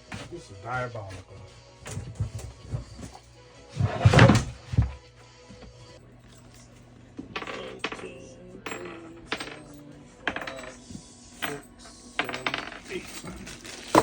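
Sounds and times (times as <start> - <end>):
metal parts clanking: 7.3 - 14.0.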